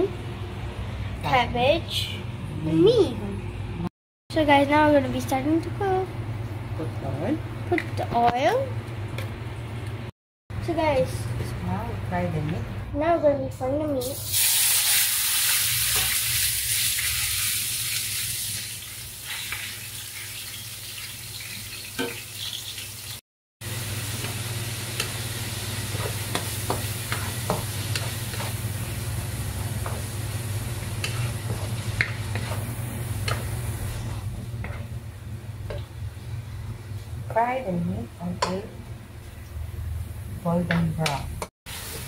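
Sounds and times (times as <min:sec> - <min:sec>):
meat sizzling in oil: 0:14.0 - 0:34.0, 0:41.7 - 0:42.0.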